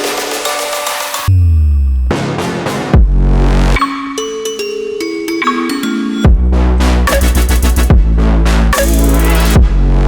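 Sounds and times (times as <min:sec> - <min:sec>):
bell-like electronic notes: 0:03.8 - 0:06.4.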